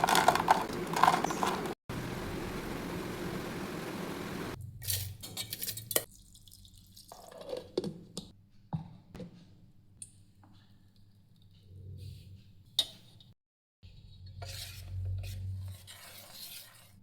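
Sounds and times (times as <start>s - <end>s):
kitchen utensils and dishes clinking: 0.0s - 1.8s
steady noise: 1.6s - 4.6s.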